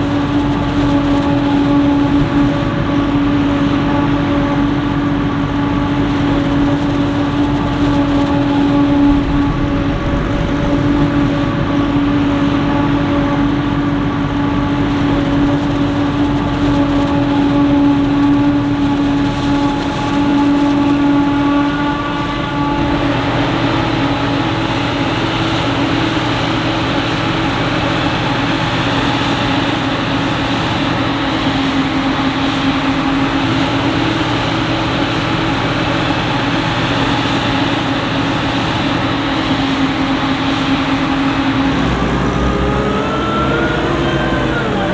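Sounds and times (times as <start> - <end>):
diesel engines running: 0.0 - 44.9
pitched machine whine: 5.7 - 13.8, 14.5 - 44.9.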